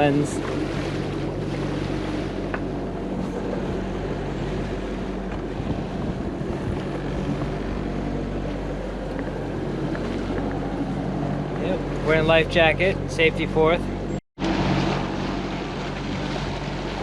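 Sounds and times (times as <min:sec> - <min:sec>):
sailboat engine humming: 0:00.0 - 0:17.0
water noise: 0:00.0 - 0:17.0
wind: 0:00.0 - 0:17.0.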